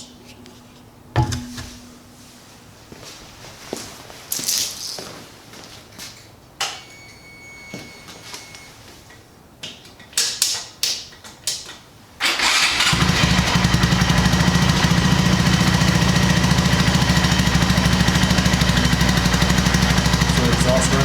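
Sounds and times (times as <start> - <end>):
motorcycle engine starting and idling: 12.2 - 21.0.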